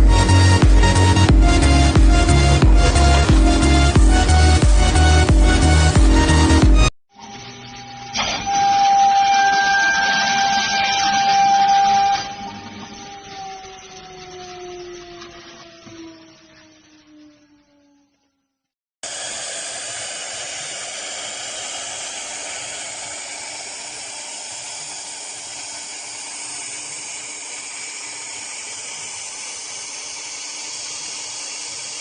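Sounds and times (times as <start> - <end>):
spindle running with loud hiss: 0.0 - 6.9, 19.0 - 32.0
router spindle whine falling: 7.2 - 18.2, 19.0 - 32.0.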